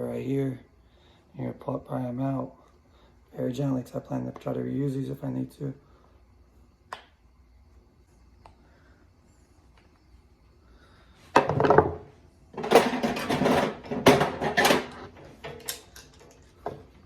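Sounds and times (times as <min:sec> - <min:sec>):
scraping and clattering: 0:12.6 - 0:16.5.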